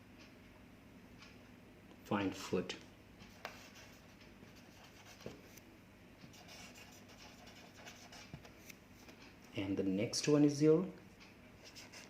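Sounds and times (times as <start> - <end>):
pen scratching handwriting: 6.3 - 8.7.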